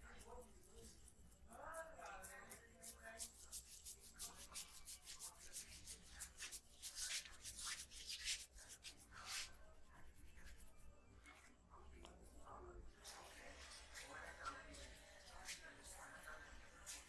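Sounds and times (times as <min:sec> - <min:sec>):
hands rubbing hair and scalp: 0:02.1 - 0:10.9.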